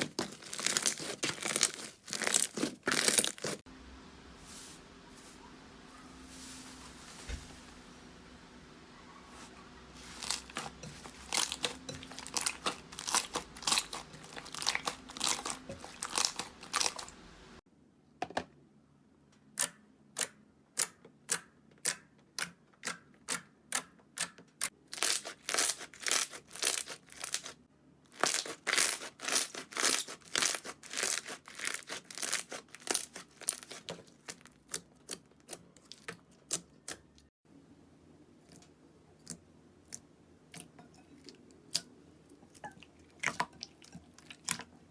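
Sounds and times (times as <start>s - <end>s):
slime crackling and popping: 0.0s - 3.6s, 10.2s - 17.1s, 24.9s - 34.8s.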